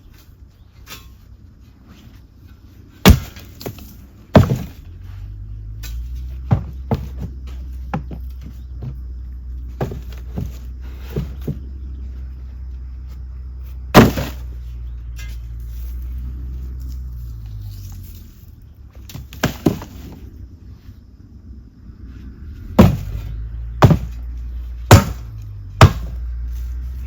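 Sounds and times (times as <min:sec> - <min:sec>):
knocks and thuds: 0:03.0 - 0:04.8, 0:06.4 - 0:09.1, 0:09.7 - 0:11.8, 0:13.9 - 0:14.6, 0:19.1 - 0:20.2, 0:22.8 - 0:26.3
low engine-like drone: 0:11.5 - 0:19.1, 0:20.2 - 0:27.0.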